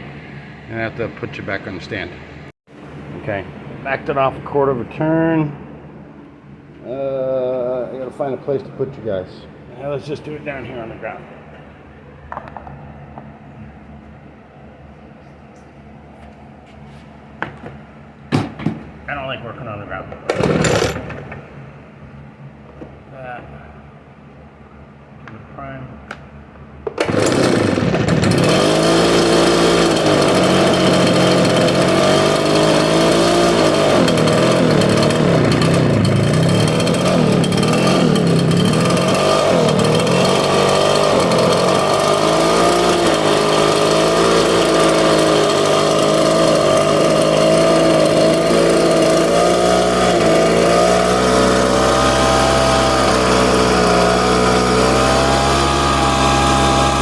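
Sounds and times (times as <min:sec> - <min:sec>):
backpack blower engine running: 0:20.3 - 0:21.4, 0:26.8 - 0:57.0.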